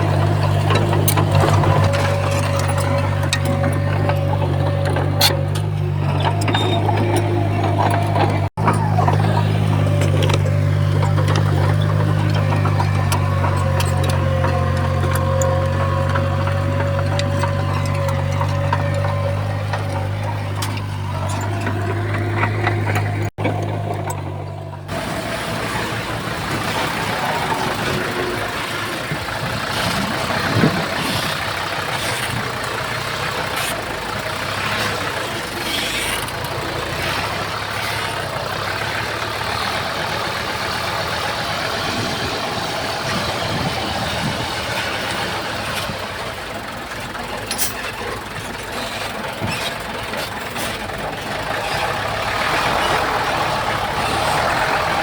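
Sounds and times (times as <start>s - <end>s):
metal clanks and knocks: 0.0s - 25.0s
diesel engine running: 0.0s - 55.0s.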